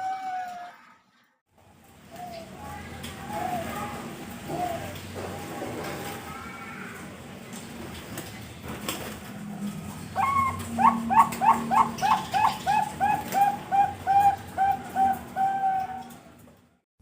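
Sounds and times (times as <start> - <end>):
dove cooing: 2.1 - 5.6, 9.8 - 16.4.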